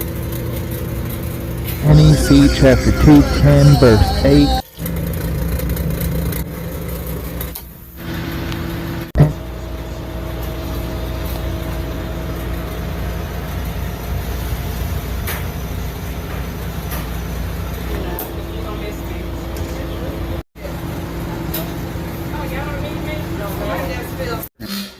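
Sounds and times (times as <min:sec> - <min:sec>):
low machine hum: 0:01.8 - 0:07.4.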